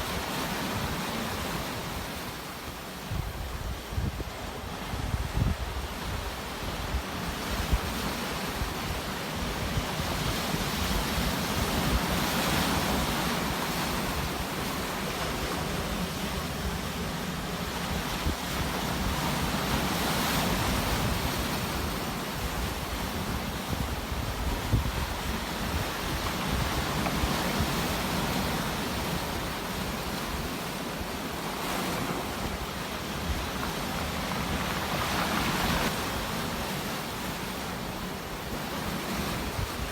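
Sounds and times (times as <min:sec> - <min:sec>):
sea waves breaking: 0:00.0 - 0:39.9
wind buffeting microphone: 0:03.1 - 0:29.6.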